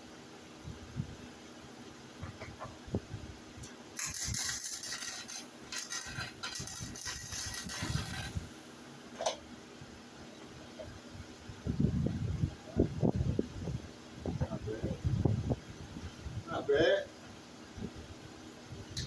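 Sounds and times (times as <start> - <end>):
welding arc crackling: 3.6 - 8.9.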